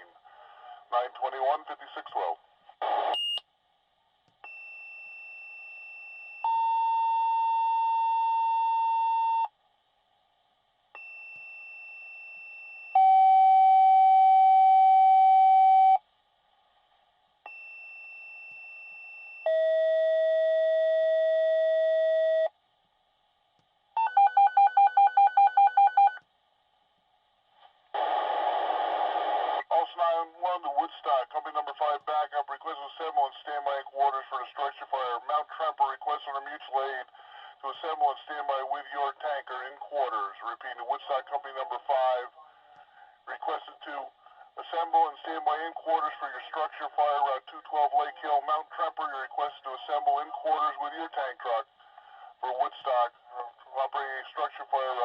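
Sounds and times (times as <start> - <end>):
dispatcher's voice: 0.9 - 2.4, 29.6 - 42.4, 43.3 - 51.7, 52.4 - 55.0
two-tone radio pages: 27.6 - 42.4.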